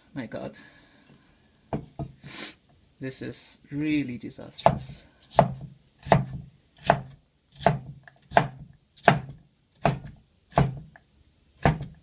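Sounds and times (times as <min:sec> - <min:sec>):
knife chopping on cutting board: 0:04.6 - 0:10.9, 0:11.6 - 0:12.0.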